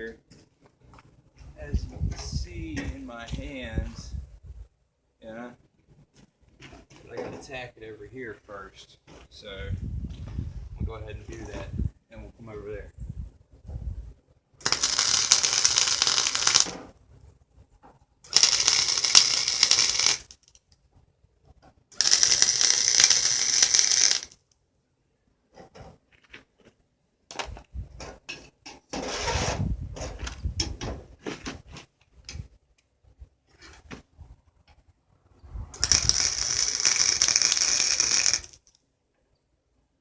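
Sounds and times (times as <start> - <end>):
arc welding crackling: 14.6 - 16.8, 18.3 - 20.6, 22.0 - 24.4, 35.8 - 38.8.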